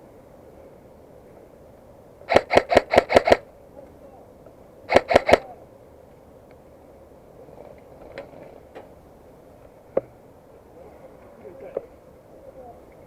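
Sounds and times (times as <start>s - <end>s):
airsoft gun shots: 2.3s - 3.5s, 4.9s - 5.6s.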